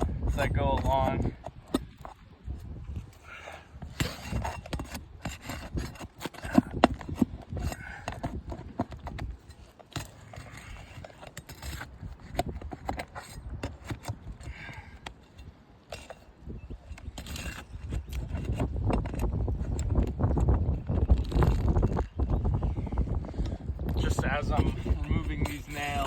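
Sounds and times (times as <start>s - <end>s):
nails pried from shingles clicking: 0.1s - 2.2s, 3.3s - 20.5s.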